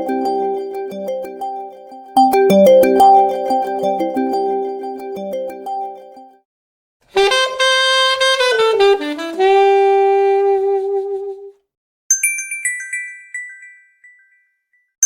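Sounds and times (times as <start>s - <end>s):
saxophone-like phone melody: 7.2s - 11.5s.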